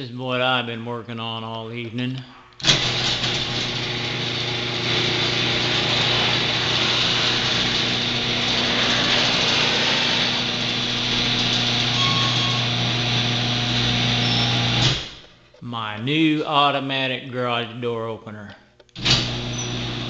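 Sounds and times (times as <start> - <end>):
garage door opener motor: 2.6 - 15.3, 19.0 - 20.0.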